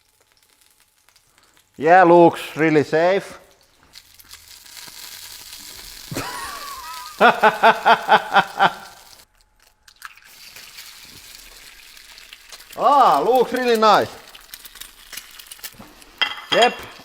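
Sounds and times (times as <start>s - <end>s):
food sizzling in a pan: 0.0s - 9.3s, 9.9s - 17.0s.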